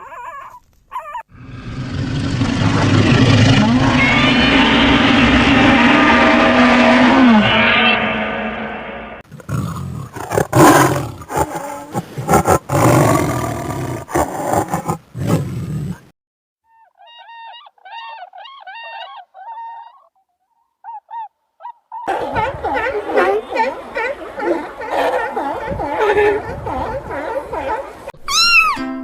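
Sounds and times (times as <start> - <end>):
large animal roaring: 1.4 - 15.5, 22.1 - 28.1.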